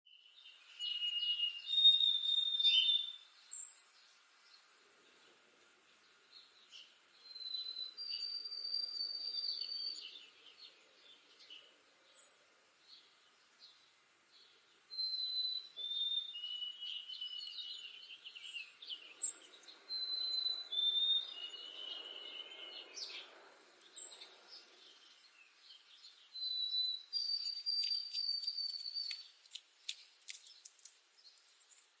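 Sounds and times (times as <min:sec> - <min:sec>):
sparrow whistled song: 0:00.1 - 0:03.8, 0:06.3 - 0:13.8, 0:14.4 - 0:29.3
sharp bird ticks: 0:27.5 - 0:31.9.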